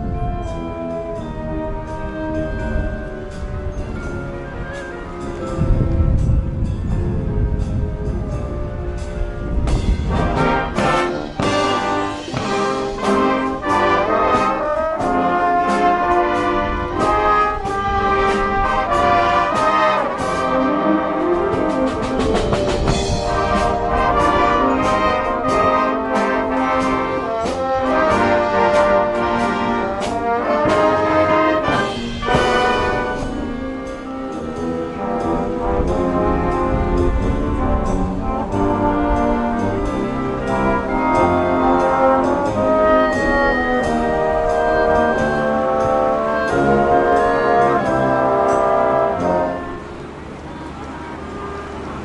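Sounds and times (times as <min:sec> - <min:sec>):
trumpets and trombones playing: 0:00.0 - 0:52.0
percussion hits: 0:09.6 - 0:46.9.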